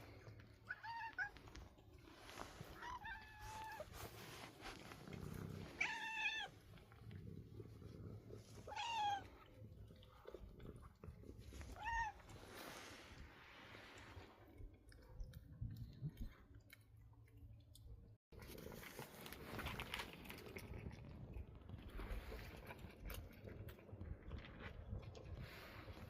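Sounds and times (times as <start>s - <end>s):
cat meowing: 5.8s - 6.5s, 8.6s - 9.3s, 11.7s - 12.3s.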